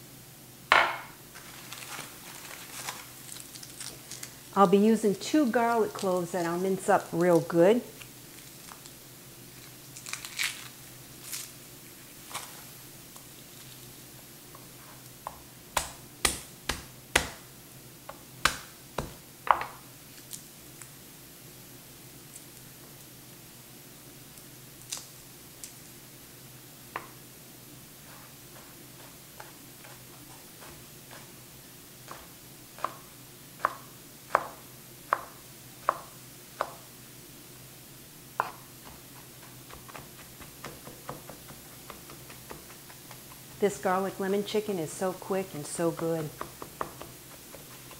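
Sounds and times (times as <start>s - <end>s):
knife chopping garlic on board: 15.3s - 17.4s, 18.1s - 19.7s, 32.0s - 36.8s, 38.4s - 43.6s, 46.0s - 47.9s.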